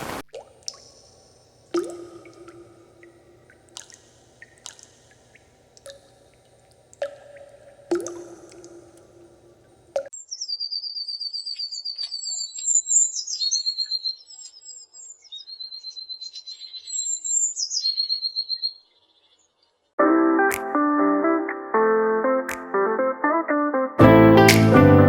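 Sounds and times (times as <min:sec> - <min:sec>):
songbird trilling: 0:10.2 - 0:19.4
plucked-string music: 0:20.0 - 0:25.0.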